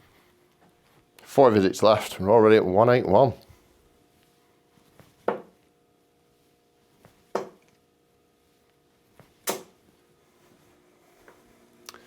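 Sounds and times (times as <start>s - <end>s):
darts striking dartboard: 7.3s - 7.6s, 9.5s - 9.8s.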